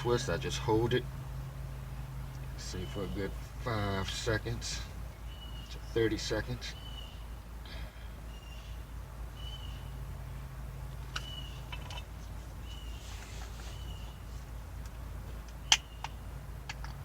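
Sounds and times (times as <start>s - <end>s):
low hum: 0.0s - 17.0s
bird whistling calls: 9.4s - 9.9s, 11.2s - 11.7s, 12.6s - 14.2s
sharp clicks: 14.8s - 17.0s.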